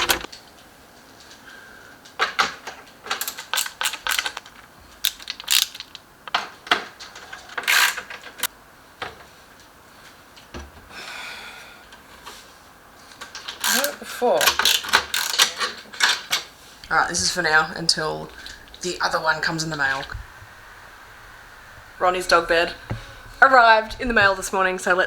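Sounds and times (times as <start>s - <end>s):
clicks and knocks of assembly: 0.0s - 0.3s, 2.4s - 6.8s, 13.4s - 25.0s.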